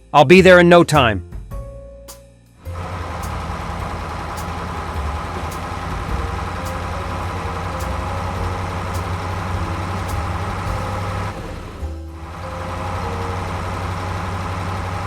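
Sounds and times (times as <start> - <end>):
heavy truck engine rumbling: 2.6 - 15.0.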